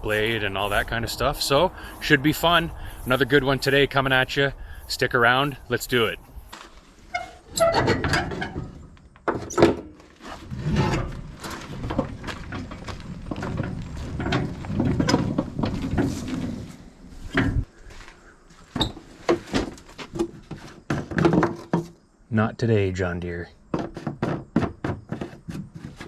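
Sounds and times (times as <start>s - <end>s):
rustling of handled things: 0.0s - 7.0s
objects knocking and scraping: 19.3s - 22.0s.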